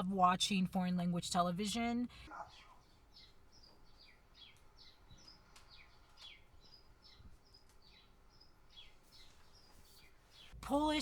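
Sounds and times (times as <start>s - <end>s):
faint bird chirping: 0.0s - 11.0s.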